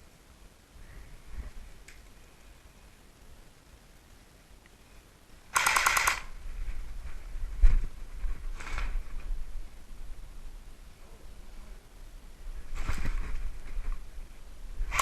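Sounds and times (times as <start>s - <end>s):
airsoft gun firing bursts: 5.5s - 6.3s.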